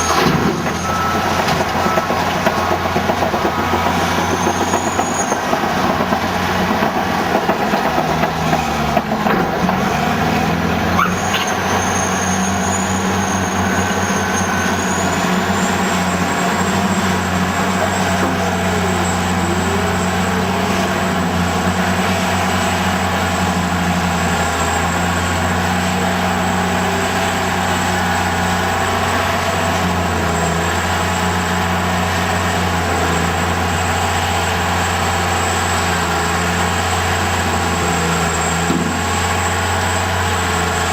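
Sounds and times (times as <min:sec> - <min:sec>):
steel tracks clanking: 0:00.0 - 0:23.3
diesel engine under load: 0:00.0 - 0:40.9.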